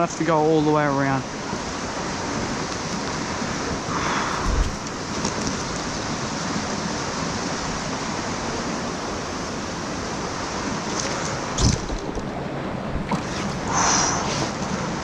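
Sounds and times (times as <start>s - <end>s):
creek water rushing over rocks: 0.1s - 15.0s
short low thump: 4.3s - 4.9s.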